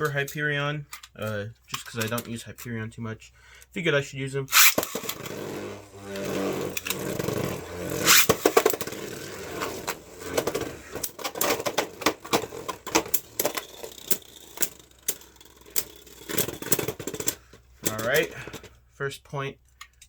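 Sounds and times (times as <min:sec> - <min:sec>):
spinning top zipping launch: 0:04.5 - 0:11.0
spinning tops scraping: 0:04.5 - 0:18.2
sharp clicks of tops clashing: 0:04.5 - 0:18.6.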